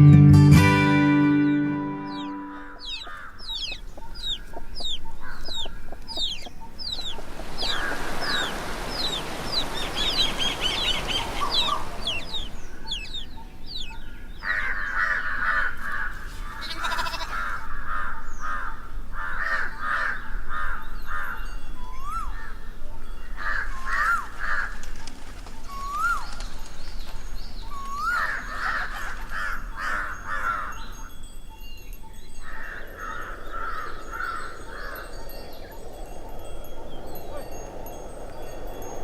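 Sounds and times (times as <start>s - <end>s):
birds harsh calls: 2.0s - 39.0s
soft steady rushing: 2.8s - 13.9s, 32.7s - 39.0s.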